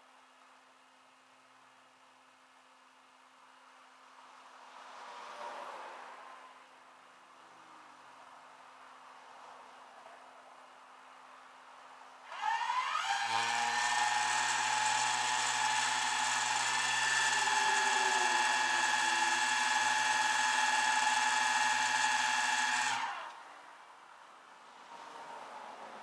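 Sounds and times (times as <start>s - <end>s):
motor whine: 12.3s - 23.4s.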